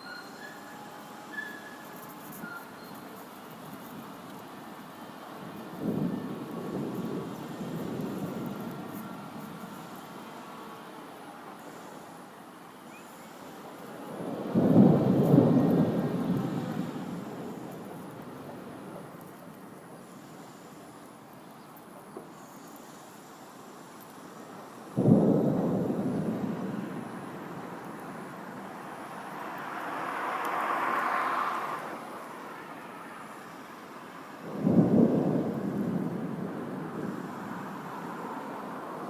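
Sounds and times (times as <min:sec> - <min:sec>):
rain hiss: 0:00.0 - 0:39.0
thunder rumbling: 0:05.2 - 0:10.4, 0:13.8 - 0:20.0, 0:24.9 - 0:31.0, 0:34.4 - 0:39.0.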